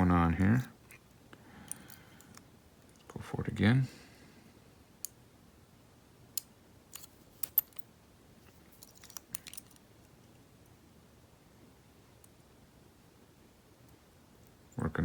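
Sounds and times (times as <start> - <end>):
lock pick metallic clicks: 6.4 - 7.9.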